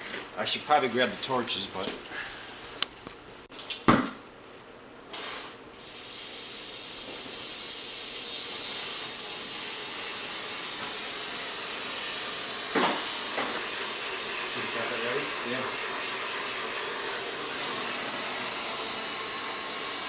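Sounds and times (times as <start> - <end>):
gas torch hissing: 5.1 - 20.0.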